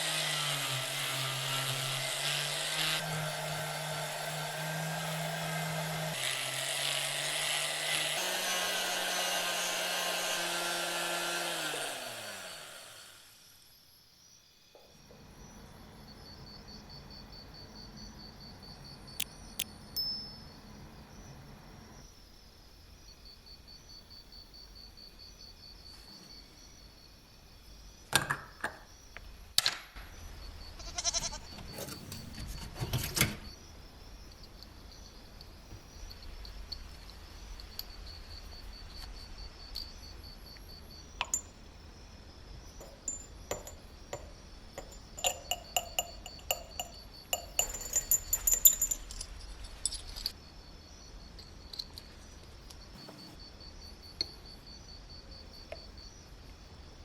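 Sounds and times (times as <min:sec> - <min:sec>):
metal parts clinking: 0:44.8 - 0:50.4.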